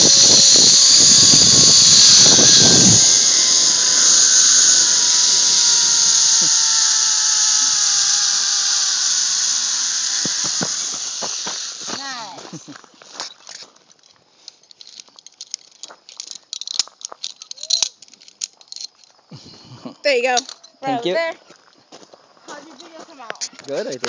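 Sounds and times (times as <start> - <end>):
wind rumbling on microphone: 0.0 - 8.6
zipline pulleys whirring on cable: 0.0 - 12.7, 14.8 - 18.9.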